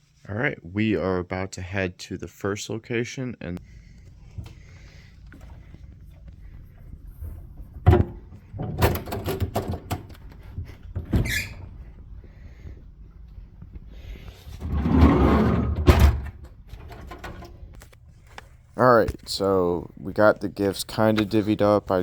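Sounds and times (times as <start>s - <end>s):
door rattling knocks: 7.8s - 10.2s.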